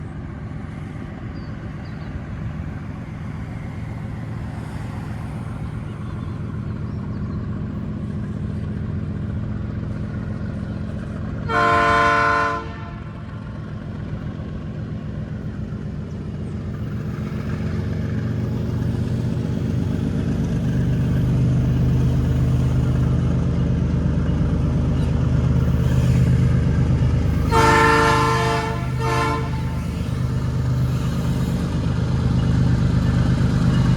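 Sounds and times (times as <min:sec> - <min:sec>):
diesel locomotive engine drone: 0:00.0 - 0:33.9
locomotive horn blasts: 0:11.5 - 0:13.3, 0:27.3 - 0:30.4.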